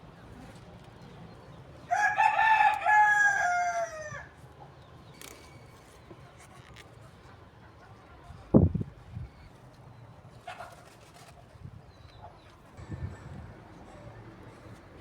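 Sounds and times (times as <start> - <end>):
rooster crowing: 1.9 - 4.3.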